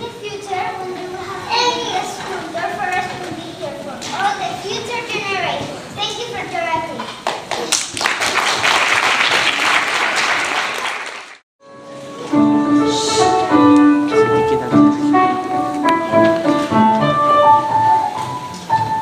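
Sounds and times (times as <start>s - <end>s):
applause: 7.2s - 11.4s
piano music: 11.6s - 19.0s.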